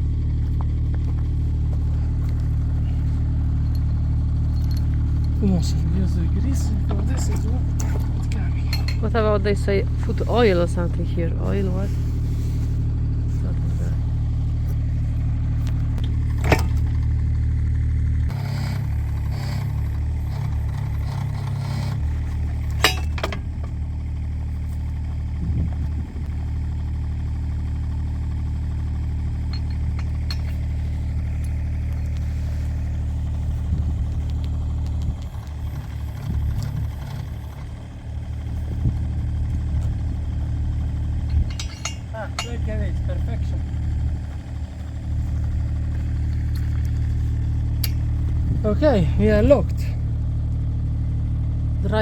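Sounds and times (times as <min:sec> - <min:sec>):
excavator diesel engine running: 0:00.0 - 0:52.0
sharp metal clinks: 0:41.2 - 0:43.1.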